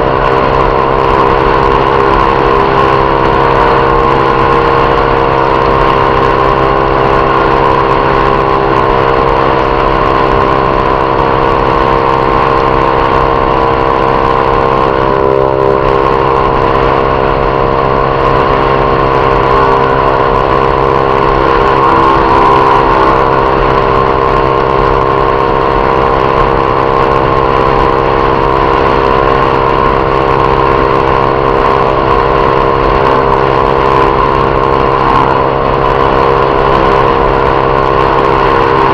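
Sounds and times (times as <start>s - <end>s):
motorcycle engine running: 0.0s - 38.9s.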